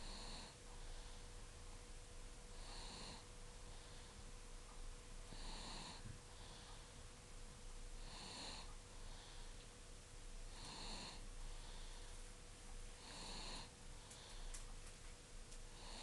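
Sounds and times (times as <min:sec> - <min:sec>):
girl snoring softly: 0:00.0 - 0:01.0, 0:02.5 - 0:03.3, 0:05.3 - 0:06.6, 0:08.0 - 0:09.4, 0:10.5 - 0:12.2, 0:13.0 - 0:14.4, 0:15.8 - 0:16.0.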